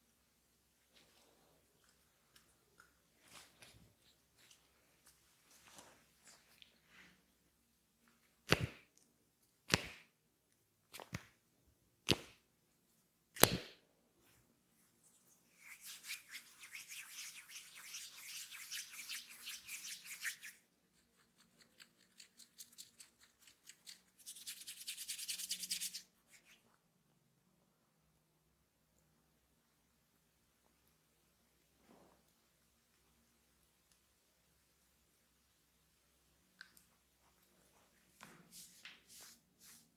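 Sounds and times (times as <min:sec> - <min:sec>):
crackling rubbing of hair: 0:15.0 - 0:26.6.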